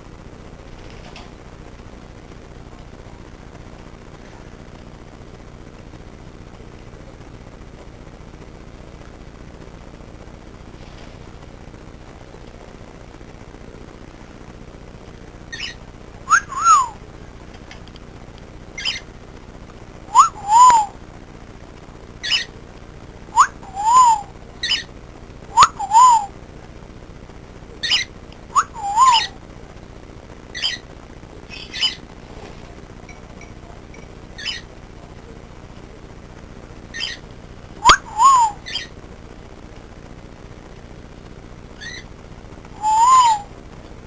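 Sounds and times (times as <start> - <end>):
cockatiel chirps: 15.5 - 17.0, 18.8 - 19.1, 20.1 - 21.0, 22.2 - 22.5, 23.3 - 24.9, 25.5 - 26.3, 27.8 - 29.4, 30.5 - 30.8, 31.5 - 32.0, 34.4 - 34.7, 36.9 - 37.2, 37.8 - 39.0, 41.8 - 42.1, 42.8 - 43.5
cockatiel whistling: 15.5 - 17.0, 18.8 - 19.0, 20.1 - 21.0, 23.3 - 24.9, 25.5 - 26.3, 27.8 - 29.4, 30.5 - 30.8, 31.5 - 32.0, 36.9 - 37.2, 37.8 - 38.9, 41.8 - 42.1, 42.8 - 43.5.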